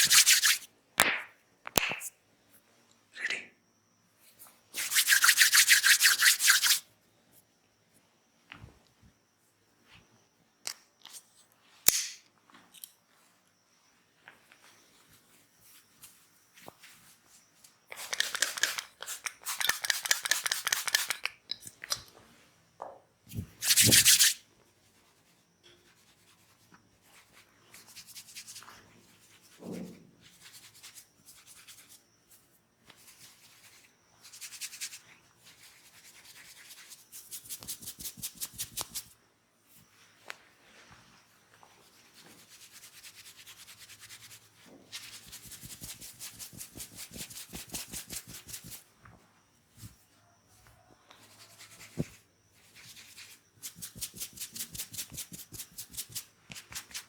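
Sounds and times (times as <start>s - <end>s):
hands rubbing skin: 0.0s - 0.7s, 4.8s - 6.8s, 18.0s - 21.2s, 23.3s - 24.4s, 35.6s - 39.1s, 45.0s - 48.8s, 51.4s - 52.2s, 52.8s - 57.0s.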